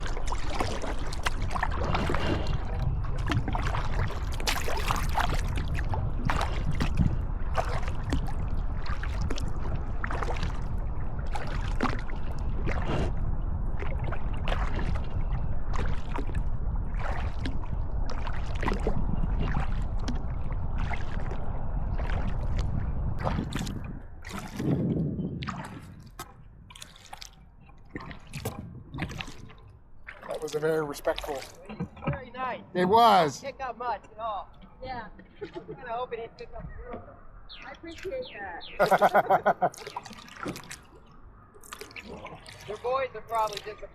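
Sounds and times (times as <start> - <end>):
water trickling and dripping: 0.0 - 13.1, 13.8 - 43.9
low rumble: 0.0 - 26.8
paddle splashing water: 0.0 - 43.9.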